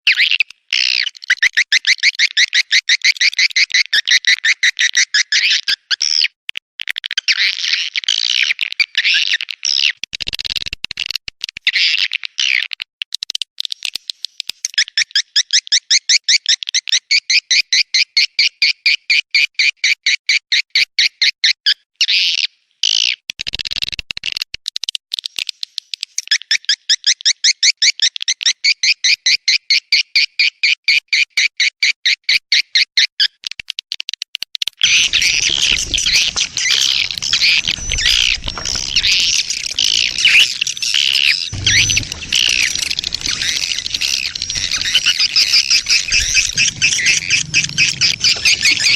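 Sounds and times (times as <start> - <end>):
low thump: 34.8 - 48.9
swiftlets twittering chirps: 34.8 - 48.9.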